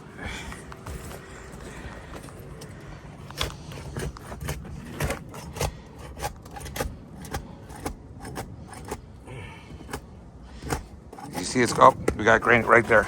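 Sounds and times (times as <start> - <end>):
roof shingles scraping loose: 0.0 - 13.0.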